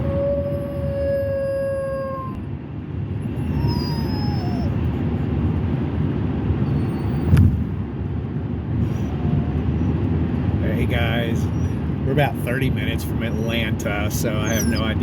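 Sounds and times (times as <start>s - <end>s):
puppy whining: 0.0s - 2.4s, 3.2s - 5.6s, 6.6s - 7.6s, 8.8s - 10.1s, 11.0s - 12.0s, 13.2s - 15.0s
car road noise: 0.0s - 15.0s.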